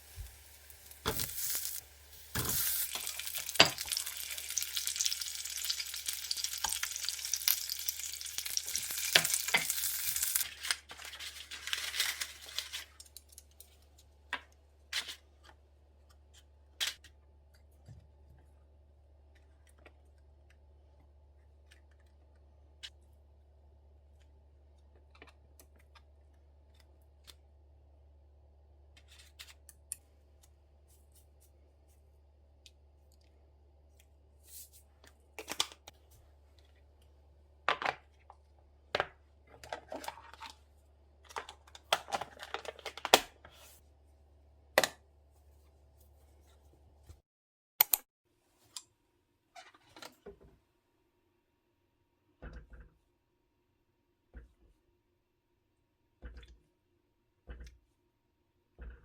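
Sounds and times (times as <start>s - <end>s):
utensils and packaging clicks and rustles: 0.1s - 18.0s, 34.5s - 36.9s, 37.7s - 43.8s.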